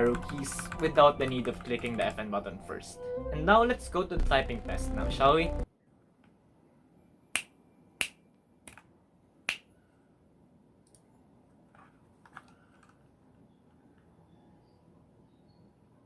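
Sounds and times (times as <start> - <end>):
mechanical keyboard keystrokes: 0.0 - 2.3.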